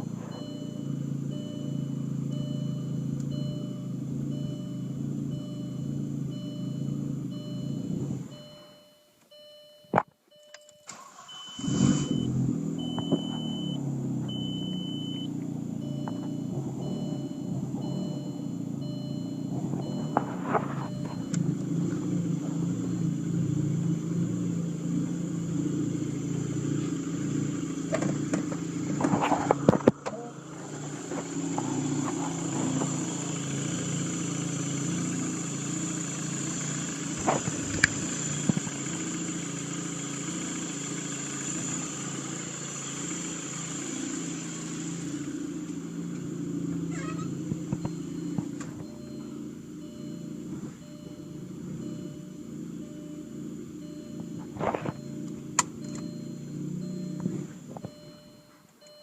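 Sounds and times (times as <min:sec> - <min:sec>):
car engine idling roughly: 0:10.9 - 0:58.1.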